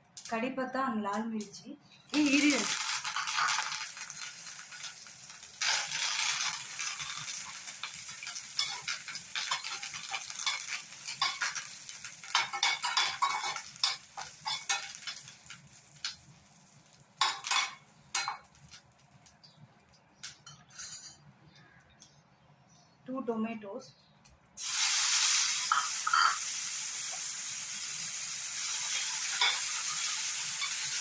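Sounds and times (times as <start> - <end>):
spices sizzling and crackling in oil: 1.4 - 21.2, 24.6 - 31.0
pan being stirred: 2.2 - 16.2, 25.6 - 26.5, 28.6 - 31.0.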